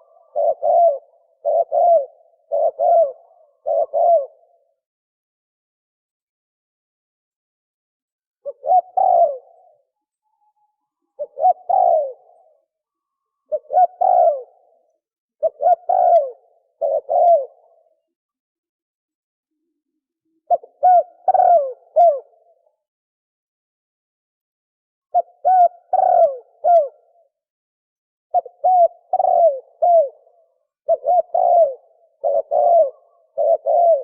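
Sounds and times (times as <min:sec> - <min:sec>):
dove cooing: 0:00.0 - 0:04.8, 0:08.4 - 0:09.9, 0:11.0 - 0:12.8, 0:13.4 - 0:18.1, 0:20.3 - 0:22.7, 0:25.1 - 0:27.3, 0:28.3 - 0:34.0.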